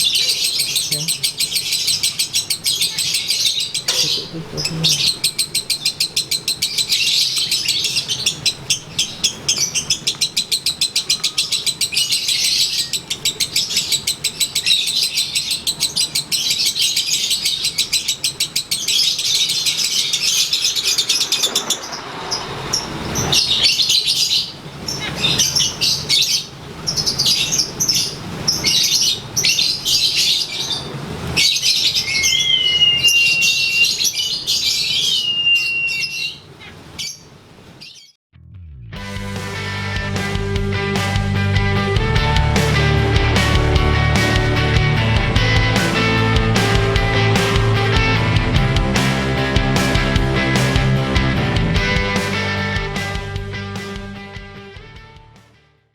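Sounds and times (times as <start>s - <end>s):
lovebird chattering trill: 0.0s - 38.1s
rushing noise: 20.3s - 29.4s
rising whistled note: 32.1s - 34.0s.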